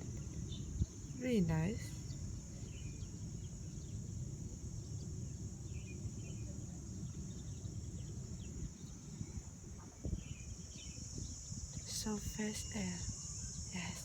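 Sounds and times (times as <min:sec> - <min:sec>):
insects droning: 0:00.0 - 0:14.0
faint bird chirps: 0:05.7 - 0:14.0.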